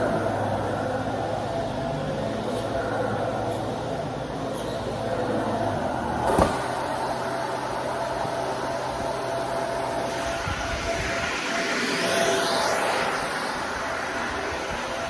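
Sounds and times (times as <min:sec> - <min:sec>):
vacuum cleaner running: 0:07.6 - 0:15.0.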